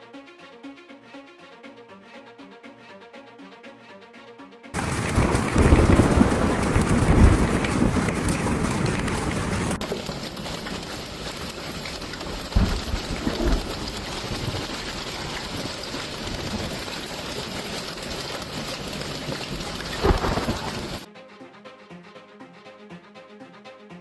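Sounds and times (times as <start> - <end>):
heavy rain downpour: 4.8 - 21.1
thunder rumbles: 4.8 - 21.1.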